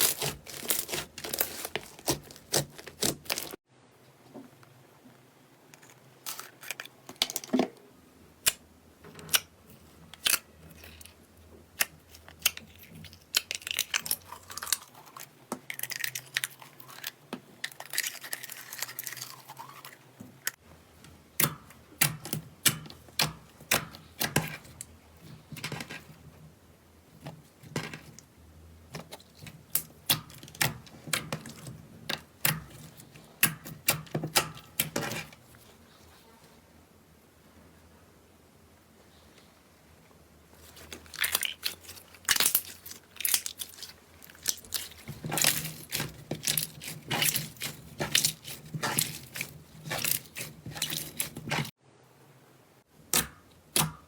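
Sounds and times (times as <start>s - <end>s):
slime popping and crackling: 0.0s - 3.6s, 40.7s - 51.7s.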